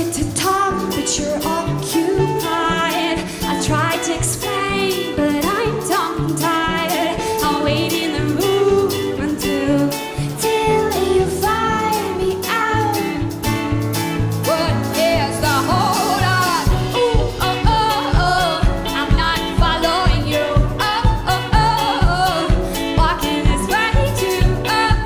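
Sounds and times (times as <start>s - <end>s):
woman singing: 0.0s - 13.6s, 14.4s - 25.0s
pulsing bass notes: 0.0s - 25.0s
steady drum beat: 0.0s - 25.0s.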